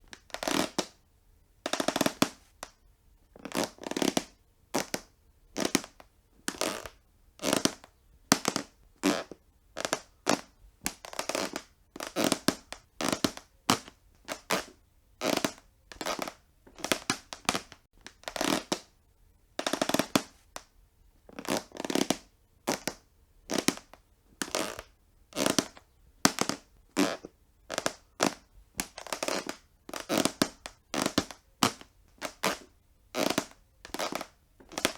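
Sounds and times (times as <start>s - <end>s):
wooden floor creaking: 11.1s - 13.4s, 14.3s - 17.7s, 21.3s - 34.9s.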